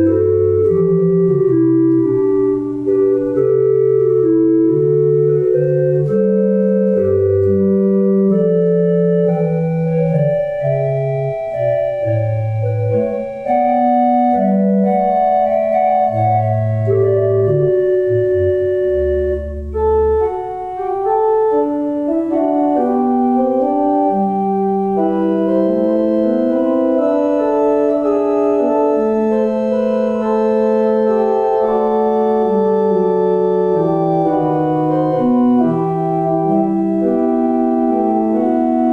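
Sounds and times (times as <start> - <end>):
organ music: 0.0 - 38.9.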